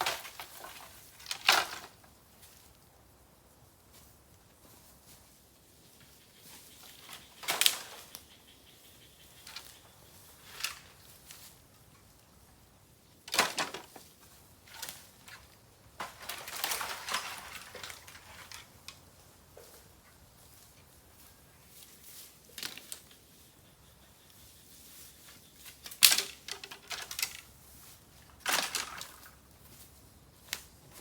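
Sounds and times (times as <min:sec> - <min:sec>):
bamboo fire popping and crackling: 0:00.0 - 0:02.9, 0:07.2 - 0:08.3, 0:13.2 - 0:19.2, 0:25.8 - 0:27.6.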